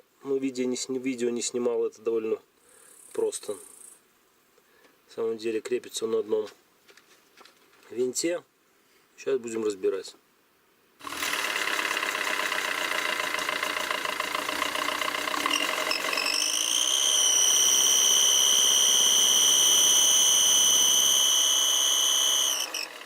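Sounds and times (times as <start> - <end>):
diesel engine idling: 11.2 - 16.2
loud high engine whistle: 15.3 - 23.0.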